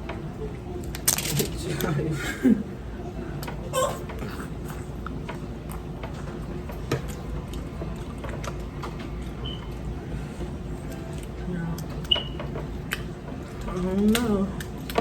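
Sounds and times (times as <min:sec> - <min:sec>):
wet eating clicks and smacks: 0:12.9 - 0:13.1.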